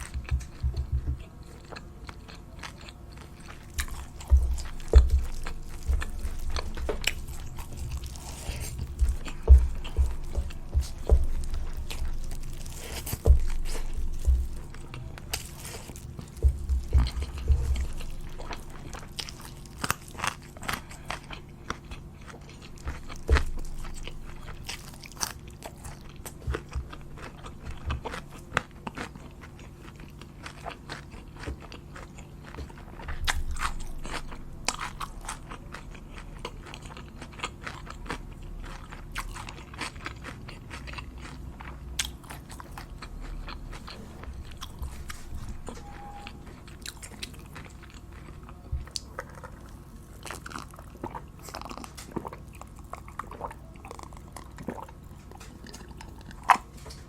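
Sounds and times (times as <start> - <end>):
crunchy chewing: 0.0 - 57.0.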